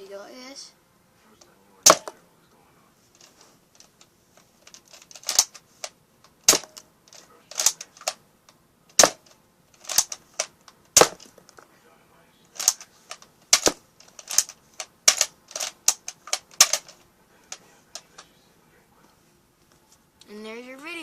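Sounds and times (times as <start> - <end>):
toy gun shots snapping: 1.9 - 2.1, 5.1 - 5.6, 6.5 - 6.8, 8.9 - 11.3, 13.5 - 14.5, 15.1 - 16.9.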